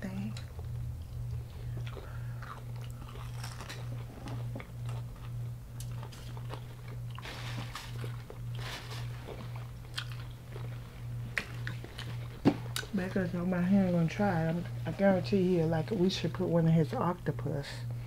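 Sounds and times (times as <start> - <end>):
steady low hum: 0.0 - 18.0
crunching and chewing crispy food: 0.3 - 13.0.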